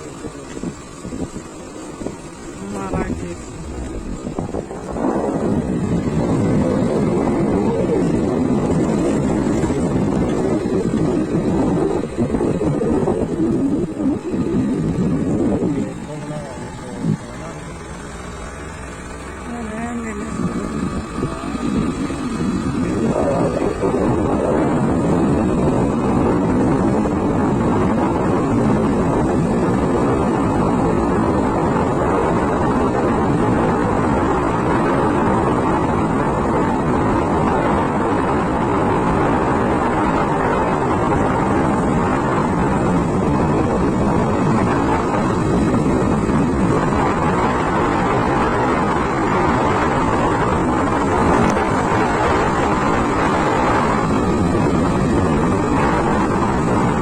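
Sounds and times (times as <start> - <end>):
motorbike engine running: 0.0 - 57.0
wind and road noise: 0.0 - 57.0.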